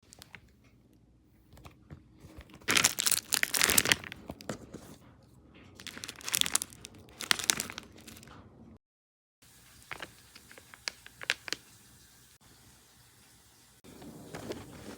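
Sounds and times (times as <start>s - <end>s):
crinkly plastic rustling: 0.0s - 0.6s, 1.6s - 8.5s, 9.7s - 11.7s, 13.8s - 14.9s.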